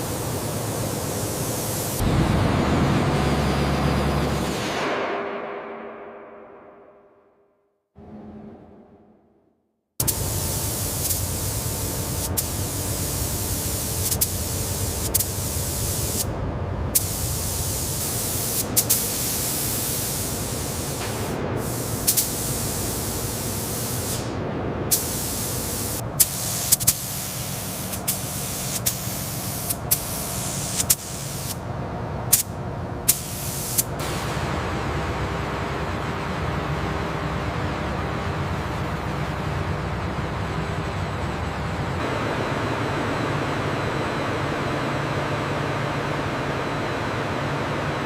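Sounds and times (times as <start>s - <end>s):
loud steady hissing: 17.0s - 31.6s.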